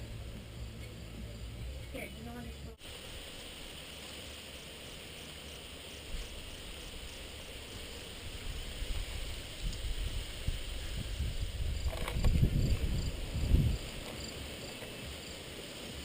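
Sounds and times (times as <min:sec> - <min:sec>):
steady hiss: 0:00.0 - 0:16.0
wind buffeting microphone: 0:08.2 - 0:14.5.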